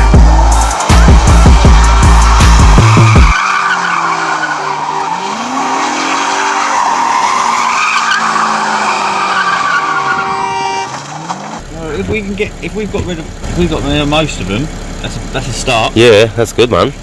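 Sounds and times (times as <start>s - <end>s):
music with sliding bass line: 0.0s - 3.4s, 11.6s - 17.0s
car engine revving: 0.0s - 17.0s
car tyres squealing: 0.0s - 17.0s.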